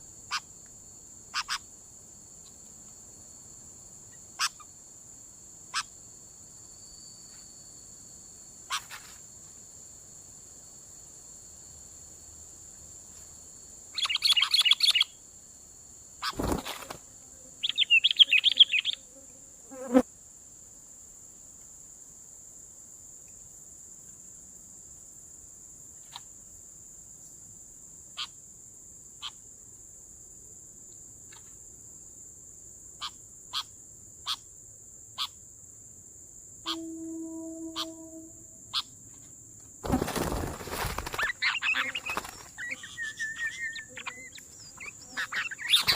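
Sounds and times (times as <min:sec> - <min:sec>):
high insect drone: 0:00.0 - 0:45.9
birds chattering: 0:41.0 - 0:45.9.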